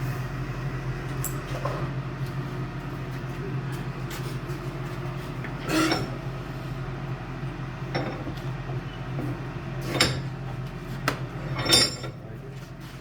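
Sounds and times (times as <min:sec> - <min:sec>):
steel tools clinking and clanking: 0:09.8 - 0:10.4, 0:11.4 - 0:12.4
ringing metal clang: 0:11.6 - 0:12.1.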